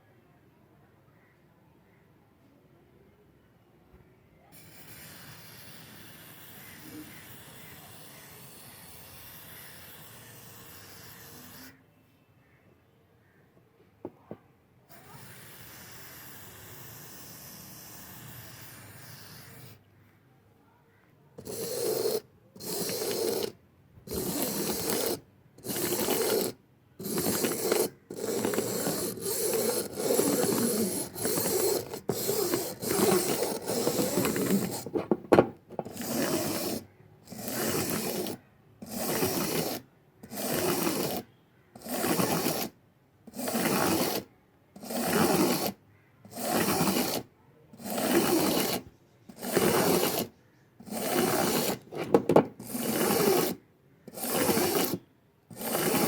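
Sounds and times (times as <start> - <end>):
hand tool scraping: 21.4 - 56.0.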